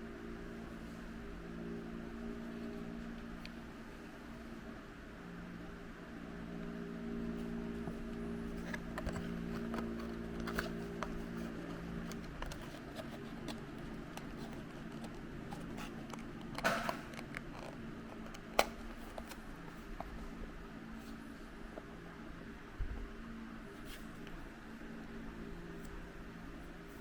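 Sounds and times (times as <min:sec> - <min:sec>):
low steady hum: 0:00.0 - 0:27.0
packaging rustling: 0:08.5 - 0:19.9.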